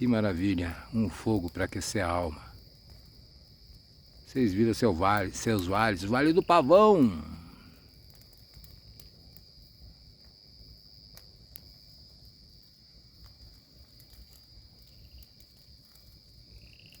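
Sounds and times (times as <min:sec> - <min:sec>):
bonfire crackling: 0:00.0 - 0:17.0
crickets chirping: 0:00.0 - 0:17.0.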